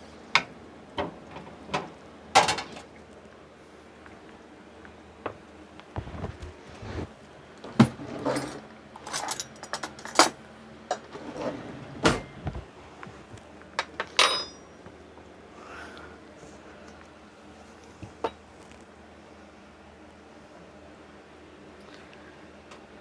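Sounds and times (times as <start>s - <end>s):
dishes and utensils clattering: 13.8s - 14.7s.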